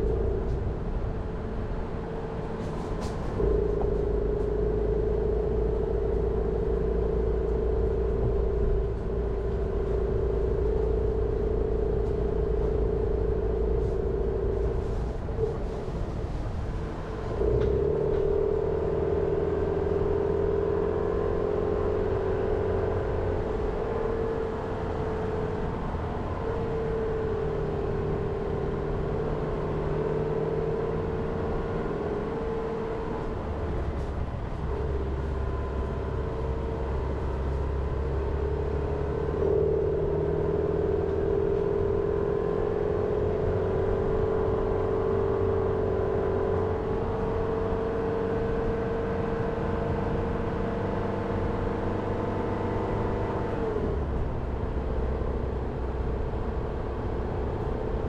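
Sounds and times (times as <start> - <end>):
droning hum: 0.0 - 20.4, 21.1 - 40.2
car engine and road noise: 0.0 - 58.0.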